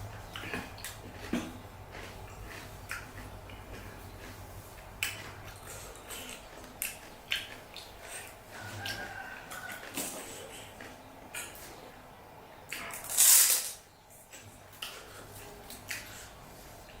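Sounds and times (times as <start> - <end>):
food crunching: 0.1 - 11.7
short hissing sound: 13.1 - 13.8.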